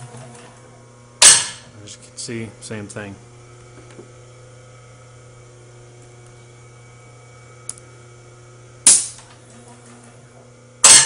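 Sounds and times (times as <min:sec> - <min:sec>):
machine hum: 0:00.0 - 0:11.0
loud sharp clunk: 0:01.2 - 0:01.7, 0:08.9 - 0:09.2.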